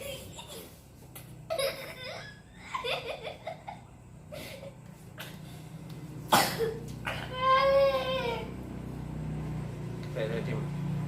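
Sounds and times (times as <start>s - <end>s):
young child laughing: 0.0s - 4.9s.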